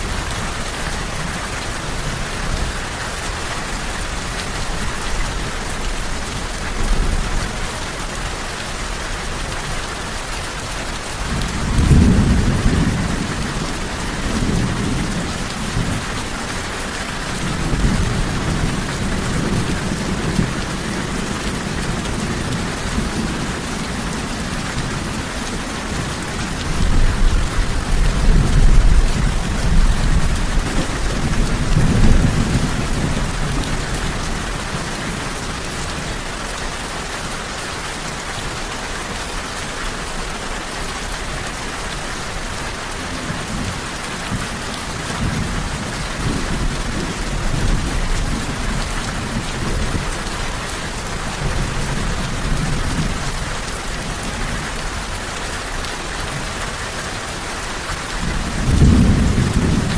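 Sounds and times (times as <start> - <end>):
steady rain falling: 0.0 - 59.9
thunder rumbling: 11.2 - 35.5, 58.2 - 59.9.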